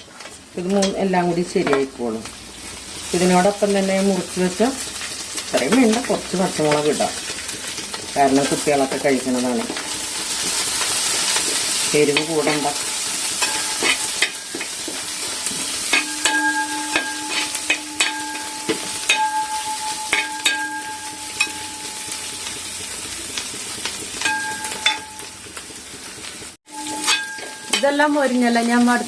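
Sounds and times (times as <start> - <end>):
vegetables sizzling in oil: 0.0 - 29.0
spoon scraping a pan: 9.6 - 22.6, 26.7 - 28.0.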